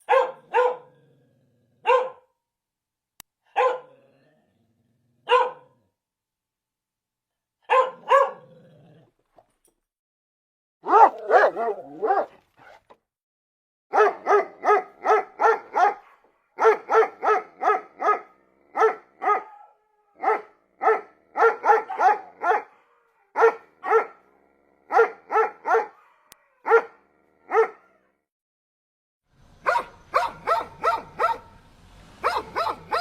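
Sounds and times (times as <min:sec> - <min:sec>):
dog barking: 0:00.0 - 0:01.0, 0:01.8 - 0:02.3, 0:03.5 - 0:04.0, 0:05.2 - 0:05.8, 0:07.6 - 0:08.5, 0:10.8 - 0:12.8, 0:13.9 - 0:28.0, 0:29.6 - 0:31.6, 0:32.2 - 0:33.0.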